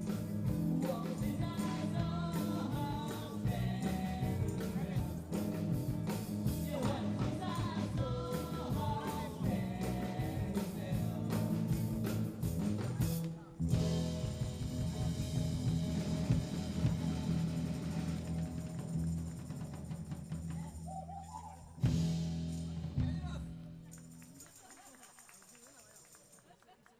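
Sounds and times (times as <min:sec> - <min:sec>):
electric guitar: 0:00.0 - 0:20.8
rock band playing live: 0:00.0 - 0:20.8, 0:21.8 - 0:23.8
drums: 0:00.0 - 0:25.4
person singing: 0:00.5 - 0:05.6, 0:06.5 - 0:12.2.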